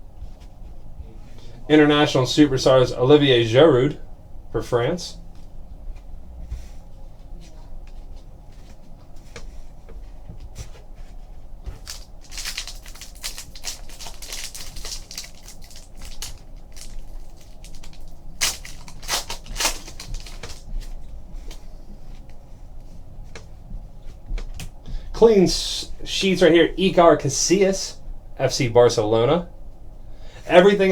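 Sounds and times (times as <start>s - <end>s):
foil card pack crinkling: 11.7s - 21.1s
trading cards clicking: 11.9s - 20.8s.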